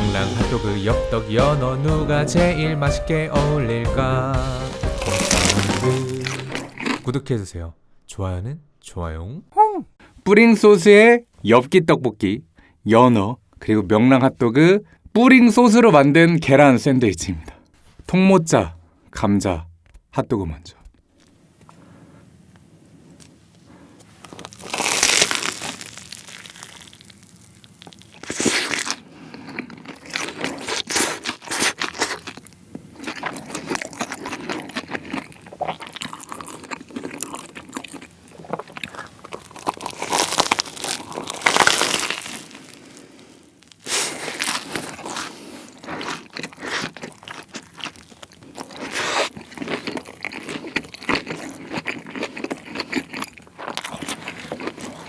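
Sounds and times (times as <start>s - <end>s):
crunchy biting and chewing: 4.8s - 7.2s, 23.2s - 55.0s.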